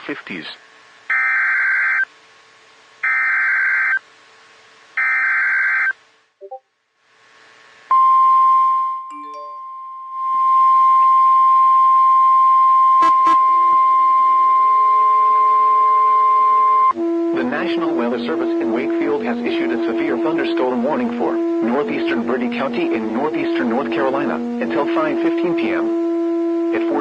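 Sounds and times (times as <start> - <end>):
steady warning alarm tone: 1.1 - 2.1, 3.0 - 4.0, 5.0 - 6.0, 9.9 - 27.0.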